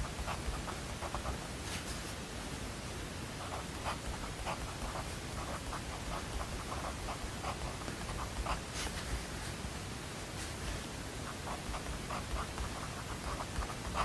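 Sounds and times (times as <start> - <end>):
pen scratching on paper: 0.0 - 1.9, 3.4 - 9.0, 11.3 - 14.0
steady white noise hiss: 0.0 - 14.0.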